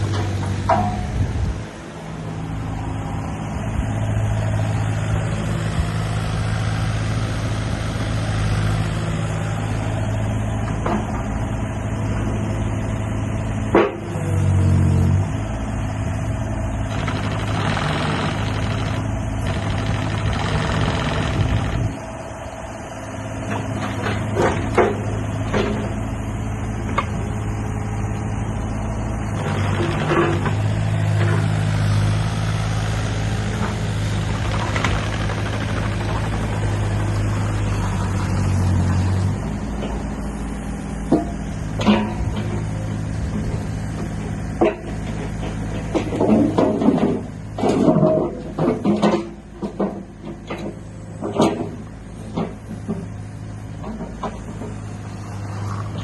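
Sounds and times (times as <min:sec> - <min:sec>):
excavator diesel engine running: 0:00.0 - 0:56.0.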